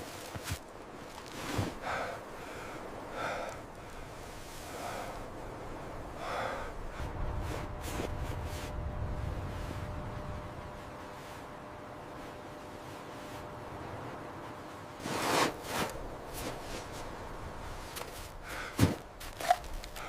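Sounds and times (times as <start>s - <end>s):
low rumble: 5.2s - 14.6s.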